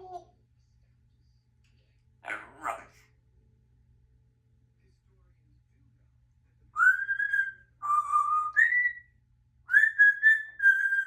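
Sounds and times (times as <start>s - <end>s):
parrot whistling: 6.8s - 9.1s, 9.7s - 11.0s.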